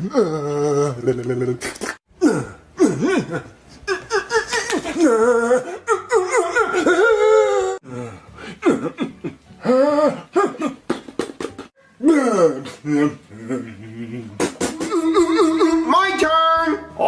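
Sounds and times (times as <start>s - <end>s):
person making wordless swooping noises: 11.8s - 16.0s.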